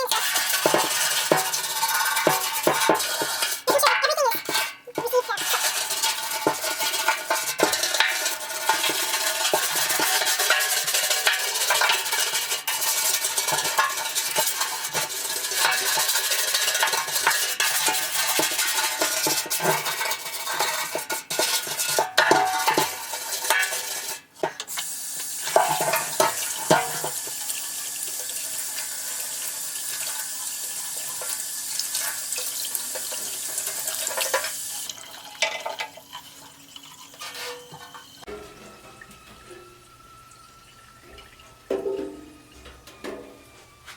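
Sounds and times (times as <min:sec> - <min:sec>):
running water: 0:24.7 - 0:42.8.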